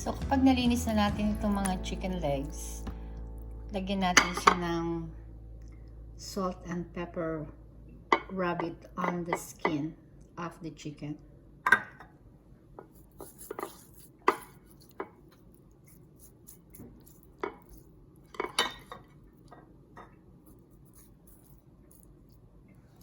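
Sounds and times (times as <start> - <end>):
dishes and utensils clinking: 4.2 - 4.7, 17.4 - 20.2.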